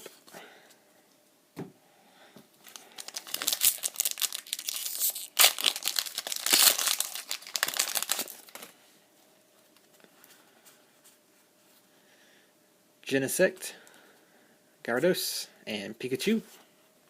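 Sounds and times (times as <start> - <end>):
foil wrapper crinkling and tearing: 2.6 - 8.8.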